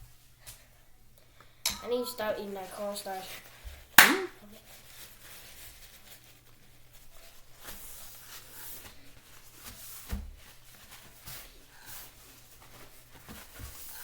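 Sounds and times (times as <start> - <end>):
faint rustles: 4.5 - 14.0.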